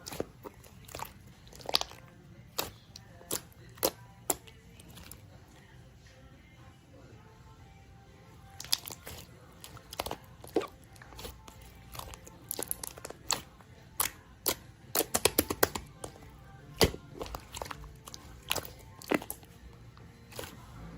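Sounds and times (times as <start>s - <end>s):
slime squishing clicks and pops: 14.0s - 16.2s, 16.8s - 19.4s.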